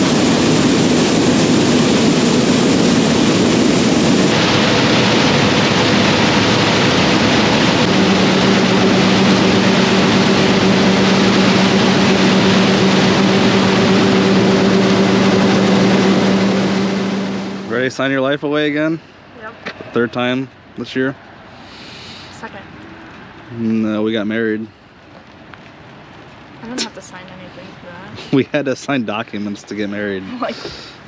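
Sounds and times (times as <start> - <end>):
loud rushing noise: 0.0 - 18.1
heavy engine running: 0.0 - 20.4
steady low hum: 0.0 - 21.7, 26.6 - 31.0.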